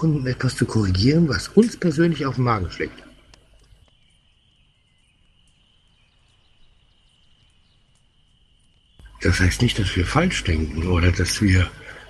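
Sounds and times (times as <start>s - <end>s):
faint ticks: 2.9s - 9.2s.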